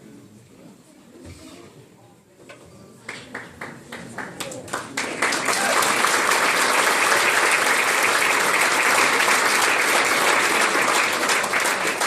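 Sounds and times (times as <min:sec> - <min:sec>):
crowd applauding: 0:03.1 - 0:12.0.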